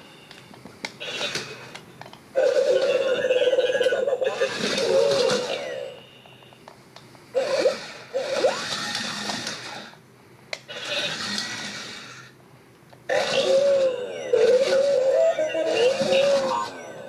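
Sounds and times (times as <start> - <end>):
warbling electronic beeps: 2.4 - 6.1, 13.3 - 17.0
toy robot motor whirring: 4.3 - 5.8, 7.4 - 10.0, 10.7 - 12.3, 13.1 - 16.9.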